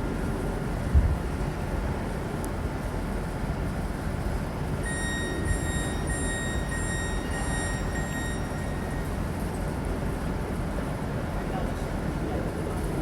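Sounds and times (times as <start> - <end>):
train equipment low rumble: 0.0 - 13.0
high steady tone: 4.8 - 9.6.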